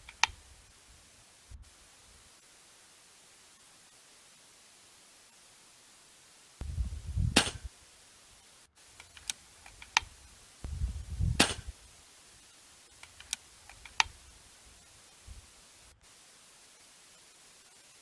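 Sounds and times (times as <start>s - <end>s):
light clicks: 0.0s - 0.4s, 9.0s - 11.8s, 13.0s - 14.2s
air rifle shots: 7.2s - 7.8s, 11.2s - 11.9s
rifle handling rumble: 7.3s - 7.7s, 9.1s - 11.8s.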